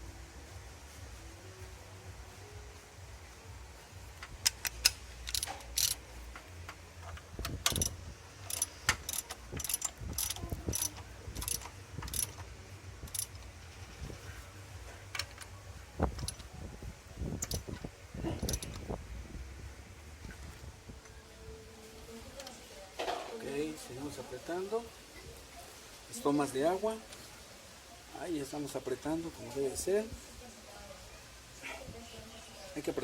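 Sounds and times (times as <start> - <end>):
ratchet wrench clicking: 4.2 - 13.5, 16.1 - 16.5, 17.4 - 17.7, 18.4 - 18.8
metal clinks: 4.4 - 6.0, 7.4 - 12.4, 13.0 - 13.5.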